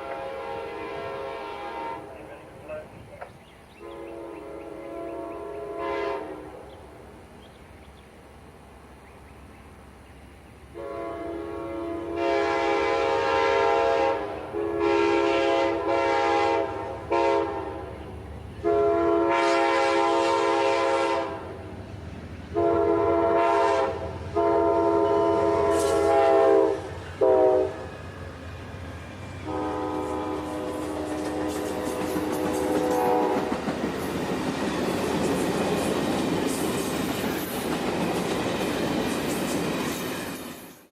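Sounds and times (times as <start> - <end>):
locomotive air horn: 0.0 - 2.3, 3.8 - 6.7, 10.7 - 18.0, 18.6 - 21.6, 22.5 - 27.9, 29.4 - 33.6
train rumbling: 0.0 - 40.9.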